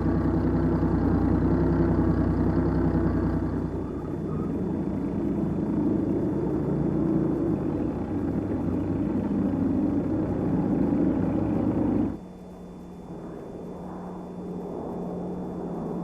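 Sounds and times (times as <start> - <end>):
heavy engine rumble: 0.0 - 12.3
steady low hum: 0.0 - 16.0.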